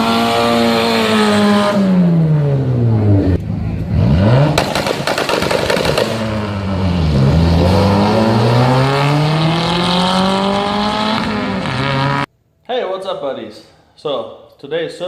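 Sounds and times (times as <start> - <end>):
car engine revving: 0.0 - 12.3
exhaust pops and crackles: 4.6 - 6.5.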